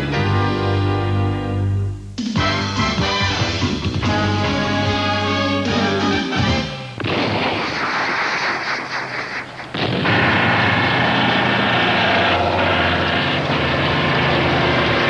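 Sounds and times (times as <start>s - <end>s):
soundtrack music: 2.2s - 7.0s.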